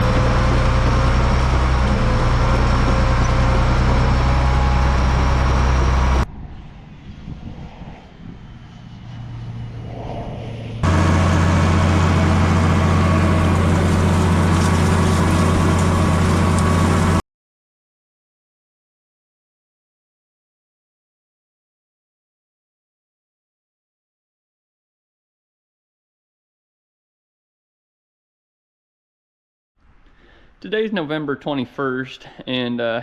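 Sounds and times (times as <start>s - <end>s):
heavy farm machinery droning: 0.0s - 7.1s, 8.2s - 17.2s.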